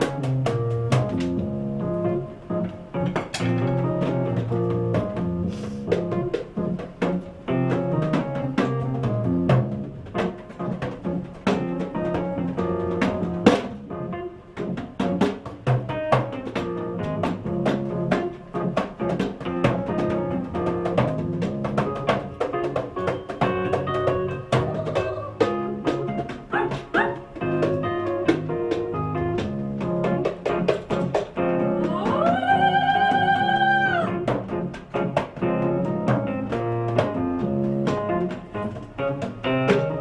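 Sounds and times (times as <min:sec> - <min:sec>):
piano chords and runs: 0:00.0 - 0:40.0
drum and cymbal hits: 0:03.1 - 0:13.9.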